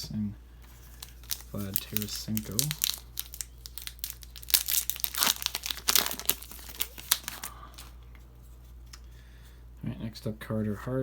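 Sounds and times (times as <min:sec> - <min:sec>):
plastic wrapper crinkling and tearing: 0:00.8 - 0:07.9.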